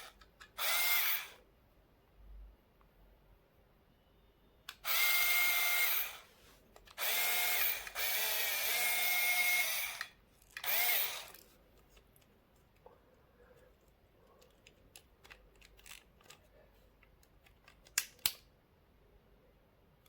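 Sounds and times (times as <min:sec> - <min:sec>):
cordless drill motor whining: 0:00.6 - 0:01.4, 0:04.8 - 0:06.3, 0:07.0 - 0:11.4.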